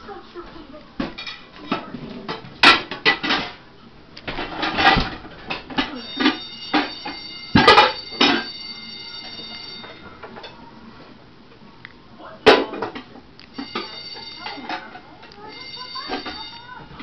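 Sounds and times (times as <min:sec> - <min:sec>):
electric school bell ringing: 0:05.9 - 0:10.2, 0:13.5 - 0:17.0.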